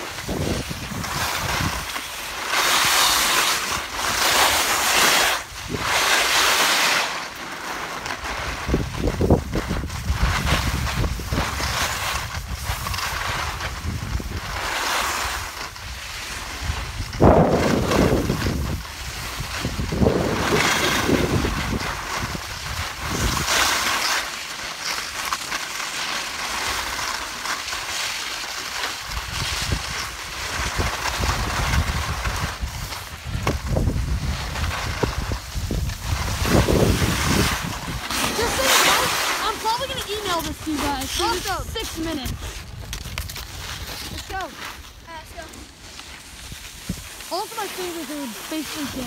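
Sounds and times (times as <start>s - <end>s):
skis sliding over snow: 0.0s - 49.0s
wind buffeting microphone: 8.4s - 14.6s, 15.2s - 23.5s, 29.1s - 44.4s, 46.3s - 47.6s.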